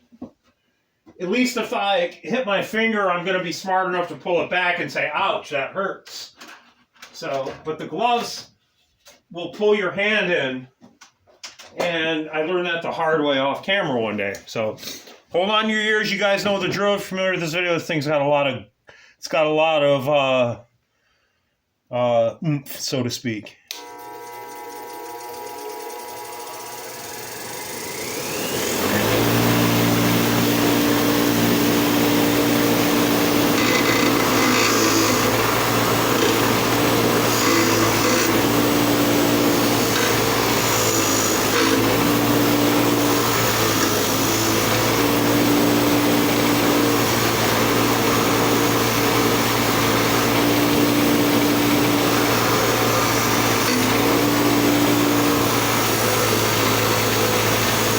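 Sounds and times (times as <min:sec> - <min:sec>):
bench grinder whine and hum: 0:23.7 - 0:57.9.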